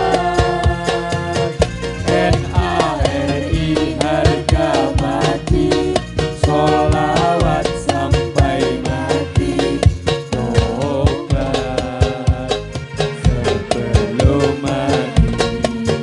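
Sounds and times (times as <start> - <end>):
frame drums fast rhythm: 0.0 - 16.0
group singing wavering melody: 0.0 - 16.0
sustained low bass: 0.0 - 16.0.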